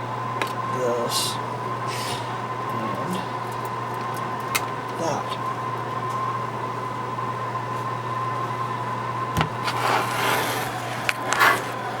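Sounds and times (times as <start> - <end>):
faint steady whine: 0.0 - 12.0
steady low hum: 0.0 - 12.0
short scraping sounds: 9.6 - 11.8.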